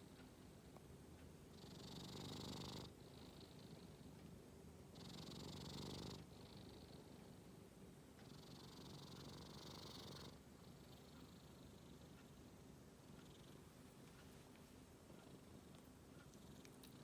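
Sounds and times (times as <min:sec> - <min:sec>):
cat snoring: 0:01.5 - 0:04.1, 0:04.9 - 0:07.5, 0:08.2 - 0:12.4, 0:13.0 - 0:13.6.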